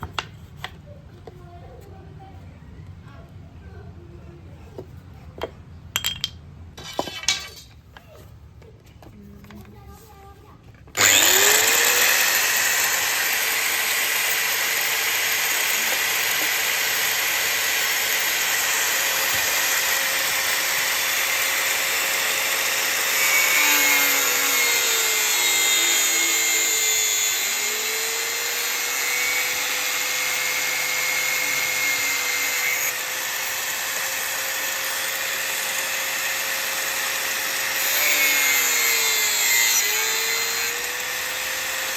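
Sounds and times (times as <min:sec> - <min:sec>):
power tool motor whine: 0:10.9 - 0:41.9
hissing cutting noise: 0:11.0 - 0:41.9.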